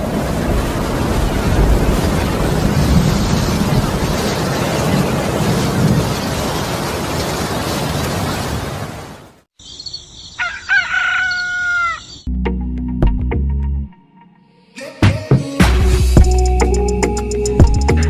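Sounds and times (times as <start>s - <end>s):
thunder rumbling: 0.0s - 8.3s.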